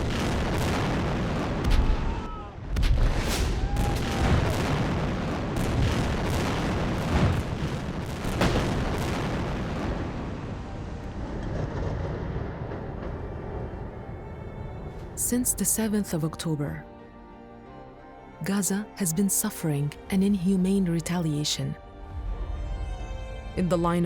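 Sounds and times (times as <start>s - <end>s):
gunfire: 0.0s - 10.0s
explosions: 0.0s - 14.3s.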